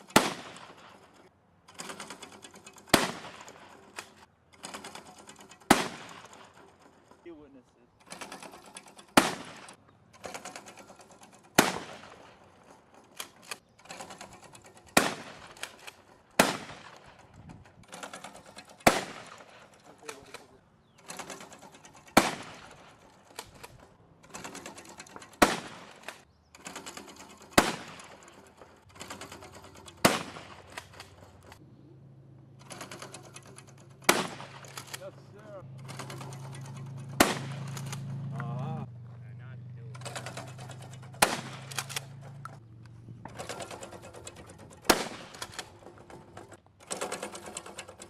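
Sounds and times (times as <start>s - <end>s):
faint distant gunshots: 5.7s - 6.4s, 9.1s - 9.8s, 11.6s - 12.4s, 15.0s - 15.7s, 16.4s - 17.2s, 18.8s - 19.7s, 22.1s - 23.0s, 30.0s - 30.8s, 34.0s - 35.1s, 37.0s - 38.2s, 40.0s - 42.2s, 44.8s - 45.5s
loud single gunshots: 16.4s - 16.9s, 37.2s - 37.6s, 41.2s - 41.7s.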